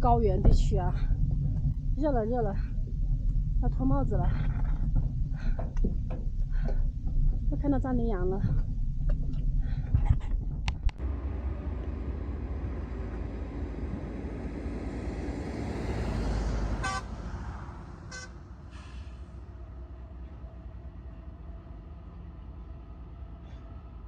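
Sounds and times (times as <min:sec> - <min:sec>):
vehicle passing on highway: 0:11.0 - 0:20.0.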